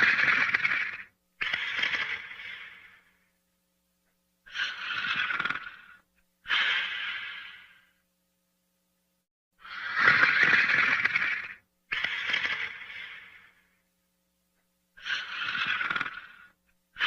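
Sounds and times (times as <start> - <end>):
person snoring: 0.0 - 3.2, 4.5 - 8.0, 9.6 - 13.7, 15.0 - 17.0.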